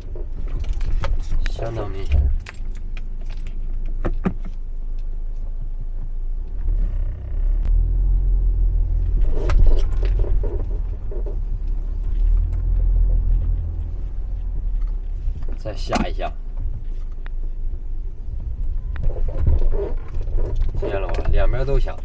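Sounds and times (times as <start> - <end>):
suspension creaking and squeaking: 0.0 - 22.0
low rumble: 4.7 - 22.0.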